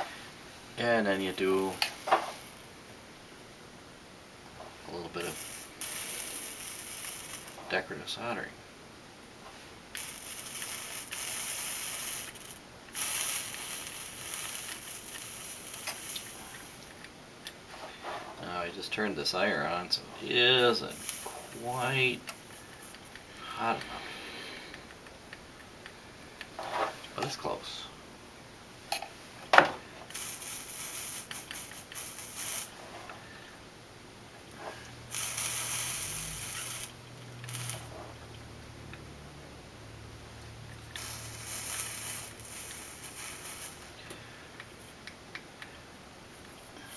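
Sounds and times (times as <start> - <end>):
flux sizzling under soldering iron: 0.8 - 3.0, 4.4 - 8.4, 9.4 - 18.9, 20.2 - 25.0, 28.9 - 33.4, 34.4 - 38.3, 40.7 - 46.9.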